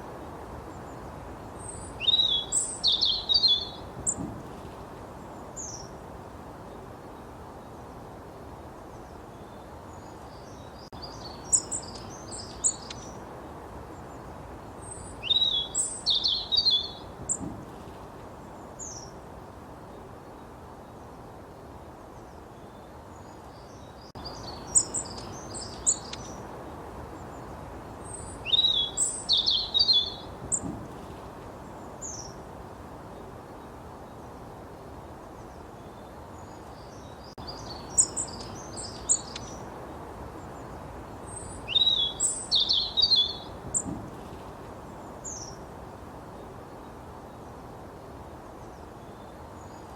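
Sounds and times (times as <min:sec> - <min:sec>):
sparrow chirping: 0:01.6 - 0:04.6, 0:10.5 - 0:13.2, 0:14.8 - 0:17.5, 0:24.2 - 0:26.4, 0:27.3 - 0:31.0, 0:37.4 - 0:39.7, 0:40.6 - 0:44.3.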